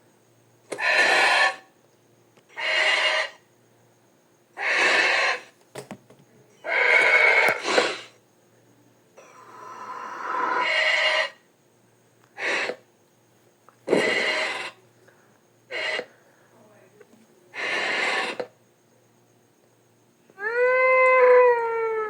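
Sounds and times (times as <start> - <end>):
breathy rasping creature calls: 9.2 - 11.4.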